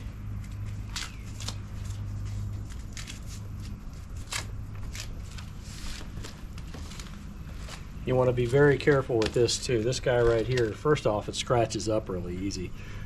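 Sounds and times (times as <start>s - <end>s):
steady low hum: 0.0s - 13.0s
packaging clicks and rustles: 4.3s - 10.8s.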